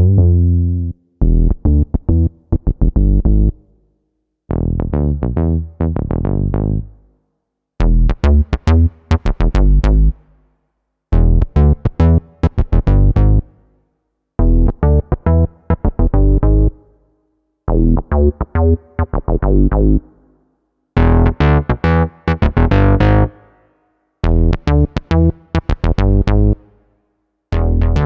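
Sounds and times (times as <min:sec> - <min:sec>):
synth bass riffs: 0:00.0 - 0:03.6, 0:04.5 - 0:06.9, 0:07.8 - 0:10.2, 0:11.1 - 0:13.5, 0:14.4 - 0:16.8, 0:17.7 - 0:20.1, 0:21.0 - 0:23.4, 0:24.2 - 0:26.6, 0:27.5 - 0:28.0.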